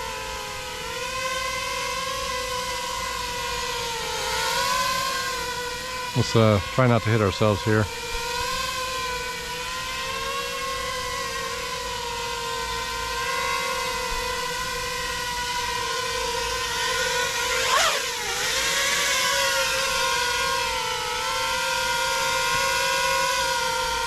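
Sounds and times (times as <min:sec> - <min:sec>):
drone propellers whining: 0:00.0 - 0:24.0.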